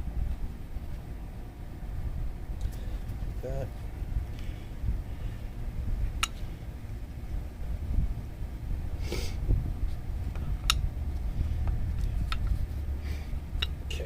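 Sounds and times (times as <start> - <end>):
low steady rumble: 0.0 - 14.0
brief hiss: 9.0 - 9.4.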